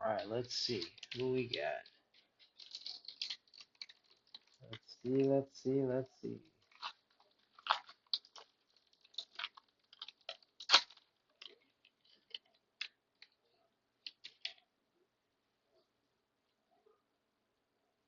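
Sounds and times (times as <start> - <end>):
card wrapper crinkling: 0.1 - 13.4, 14.0 - 14.6.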